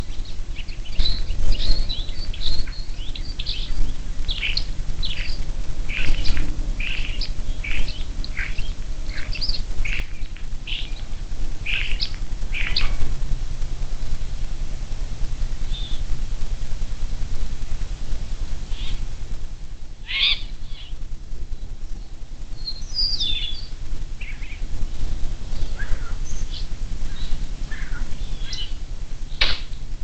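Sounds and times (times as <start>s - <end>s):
birds chirping: 0.0s - 13.1s, 15.6s - 16.1s, 18.6s - 19.1s, 20.0s - 29.9s
steady low rumble: 0.0s - 30.0s.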